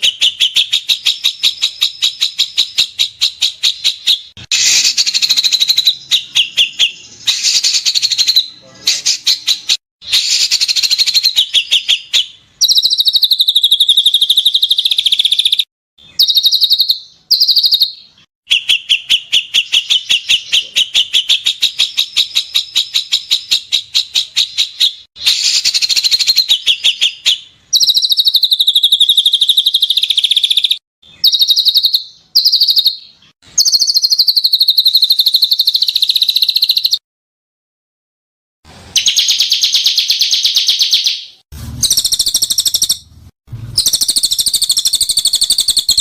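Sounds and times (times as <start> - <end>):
songbird chatter: 0.0 - 37.0, 39.0 - 43.0, 43.8 - 46.0.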